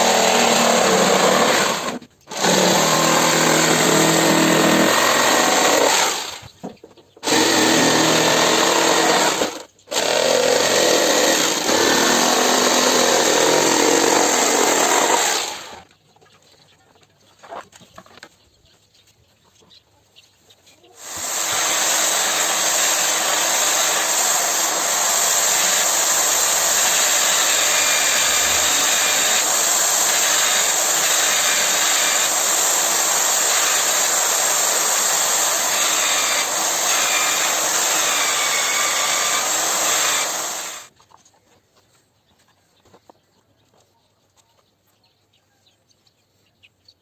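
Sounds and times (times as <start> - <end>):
high-speed electric motor running: 21.0 - 40.9.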